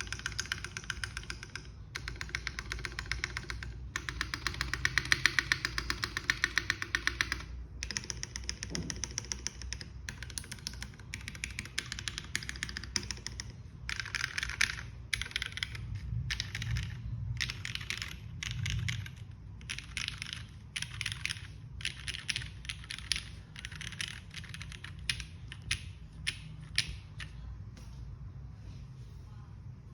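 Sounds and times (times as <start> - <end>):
mechanical keyboard typing: 0.0 - 27.4.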